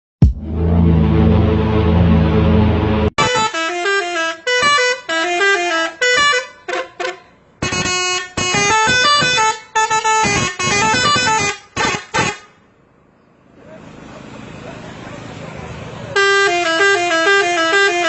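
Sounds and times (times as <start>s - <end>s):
bus multi-tone horn melody: 0.4s - 12.7s, 16.2s - 18.0s.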